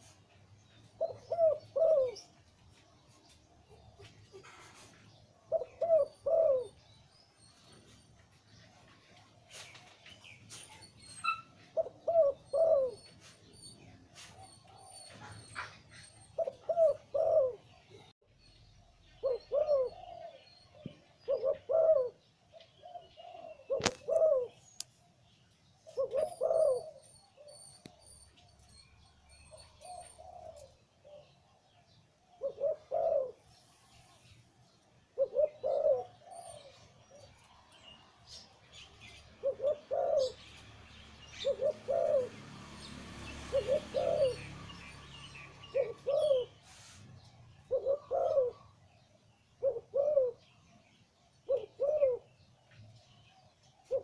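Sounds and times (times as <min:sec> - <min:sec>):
faint high bird chirps: 0:00.0 - 0:31.2
dove cooing: 0:00.9 - 0:02.4, 0:03.7 - 0:07.0, 0:08.8 - 0:18.1, 0:19.2 - 0:24.8, 0:25.8 - 0:28.0, 0:29.3 - 0:34.4, 0:35.1 - 0:42.5, 0:43.3 - 0:46.6, 0:47.5 - 0:48.8, 0:49.5 - 0:50.8, 0:51.4 - 0:52.5, 0:53.7 - 0:54.0.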